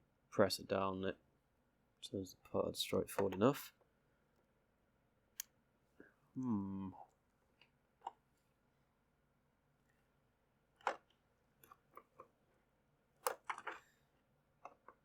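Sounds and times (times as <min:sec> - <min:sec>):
faint plastic clicks and taps: 0:03.1 - 0:03.9.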